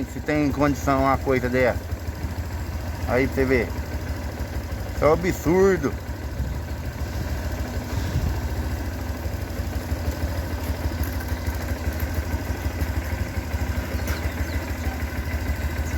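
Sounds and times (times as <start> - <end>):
vehicle engine idling: 0.0 - 15.9.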